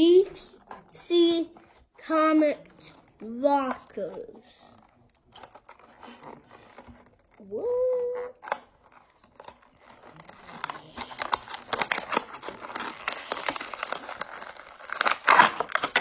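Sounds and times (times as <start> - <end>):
plastic packaging crinkling and tearing: 4.6 - 16.0.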